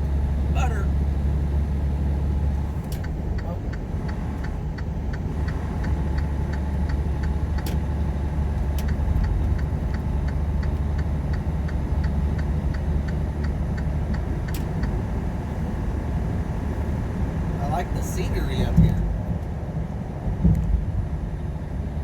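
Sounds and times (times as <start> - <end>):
truck engine and road drone: 0.0 - 22.0
light ticking: 8.6 - 15.0.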